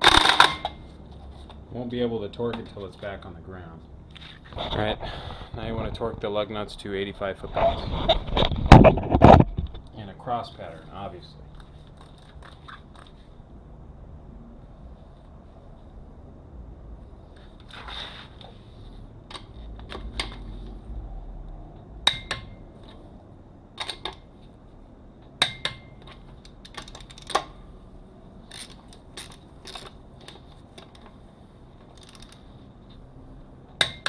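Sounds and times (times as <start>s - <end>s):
torque wrench metallic clicks: 31.9s - 32.4s.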